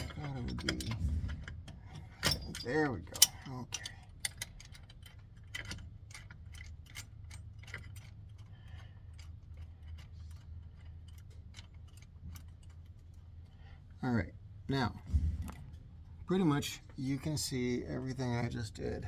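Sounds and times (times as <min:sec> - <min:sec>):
low steady hum: 0:00.0 - 0:19.0
metallic clicks of hand tools: 0:01.9 - 0:12.8.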